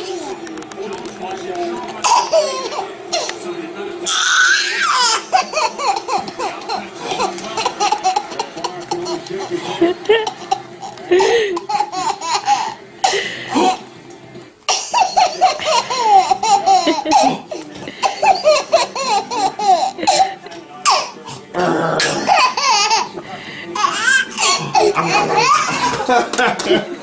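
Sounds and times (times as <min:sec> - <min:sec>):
baby laughing: 0:02.0 - 0:03.3, 0:04.1 - 0:13.8, 0:14.7 - 0:21.2, 0:22.1 - 0:23.2, 0:23.8 - 0:26.7.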